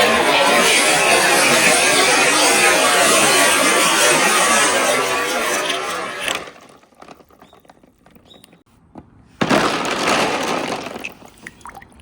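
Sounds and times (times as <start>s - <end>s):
marbles clattering down wooden run: 9.4s - 11.8s.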